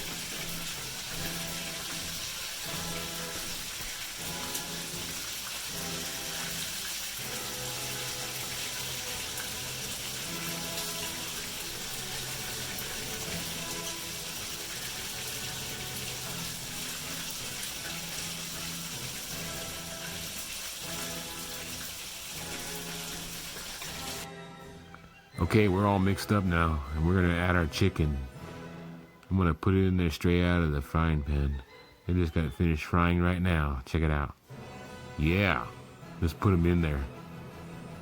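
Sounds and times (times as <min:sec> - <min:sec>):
food sizzling in a frying pan: 0:00.0 - 0:24.3
background music with held notes: 0:00.0 - 0:38.0.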